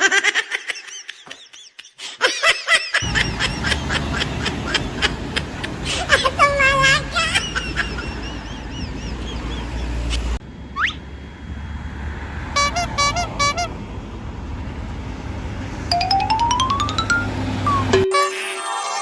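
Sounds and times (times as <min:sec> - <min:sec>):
multi-tone musical bus horn: 0:03.0 - 0:08.6, 0:12.4 - 0:13.8, 0:15.9 - 0:18.5
low vehicle rumble: 0:03.0 - 0:18.0
rising whistle: 0:10.8 - 0:11.0.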